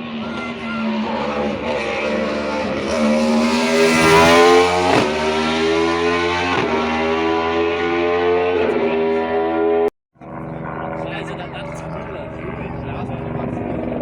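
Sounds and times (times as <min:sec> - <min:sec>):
rally car engine accelerating: 0:00.0 - 0:09.9.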